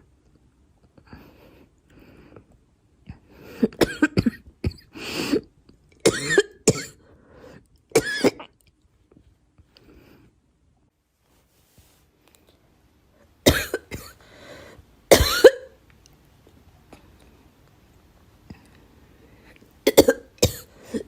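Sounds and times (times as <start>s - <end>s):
girl coughing: 3.6s - 5.0s, 6.0s - 7.0s, 8.0s - 8.5s, 13.4s - 14.2s, 15.1s - 15.8s, 19.9s - 21.0s.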